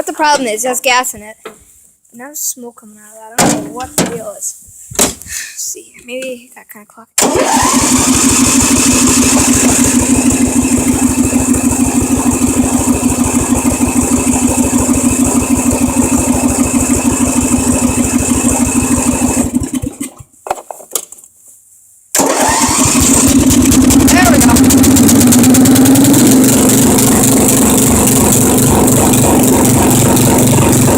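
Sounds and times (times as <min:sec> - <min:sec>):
mower engine cranking: 0:07.2 - 0:20.3, 0:22.1 - 0:30.9.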